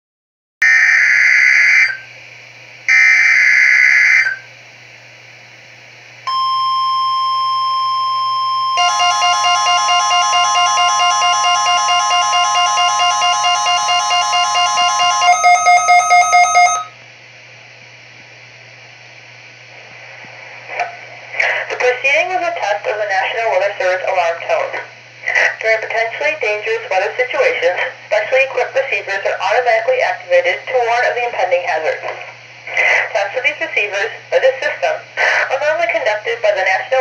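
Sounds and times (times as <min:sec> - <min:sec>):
steady warning alarm tone: 0:02.9 - 0:04.5, 0:06.3 - 0:17.0
warbling beeping alert: 0:06.3 - 0:16.9
screechy digital data bursts: 0:08.8 - 0:16.9.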